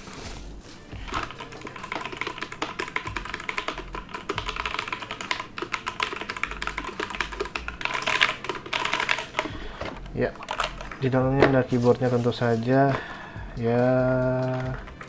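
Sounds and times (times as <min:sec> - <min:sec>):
plastic clicks clattering: 0:01.1 - 0:12.0, 0:14.2 - 0:15.0.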